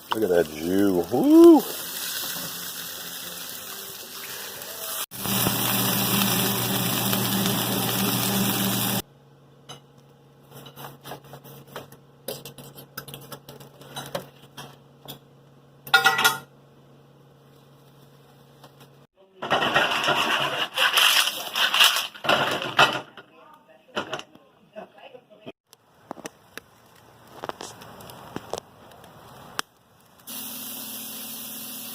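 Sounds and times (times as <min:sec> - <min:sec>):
steady cooking hiss: 0:00.0 - 0:09.0, 0:25.8 - 0:31.9
dishes clattering: 0:15.9 - 0:16.5
utensils clinking on dishes: 0:15.9 - 0:16.5.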